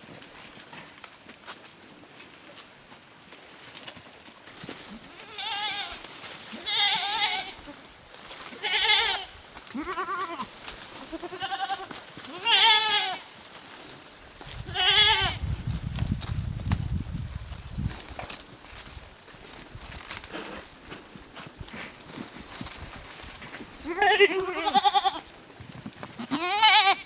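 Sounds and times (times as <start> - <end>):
goats bleating: 5.0 - 7.9, 8.5 - 13.3, 14.6 - 15.4, 23.8 - 25.3, 26.2 - 27.0.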